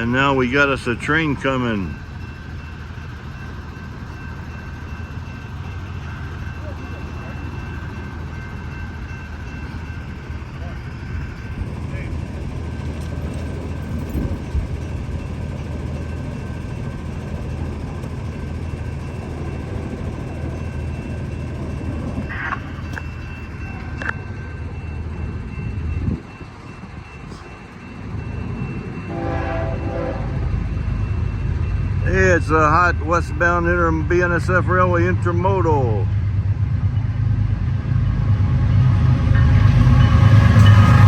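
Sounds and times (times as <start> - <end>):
locomotive rumble: 0.0 - 41.0
train horn chord: 29.1 - 30.4.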